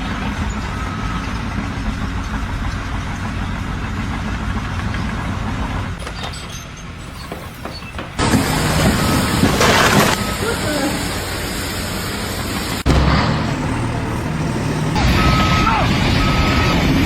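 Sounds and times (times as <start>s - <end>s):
engine rumbling: 0.0s - 17.0s
loud noisy sound: 8.2s - 17.0s.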